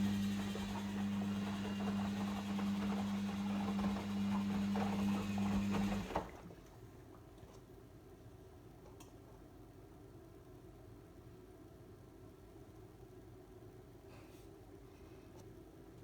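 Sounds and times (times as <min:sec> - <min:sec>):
drain pump humming and gurgling: 0:00.0 - 0:07.6.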